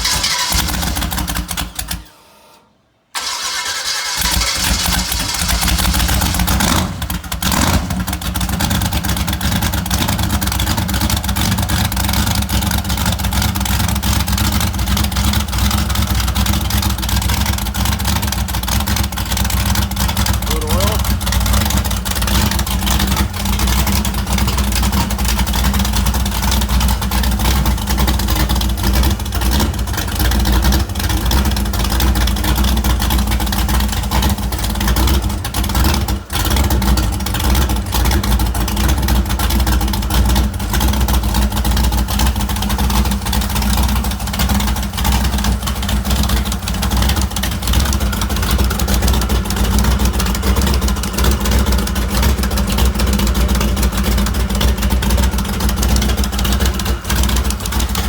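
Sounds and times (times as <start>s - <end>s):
engine running loudly: 17.8s - 58.0s.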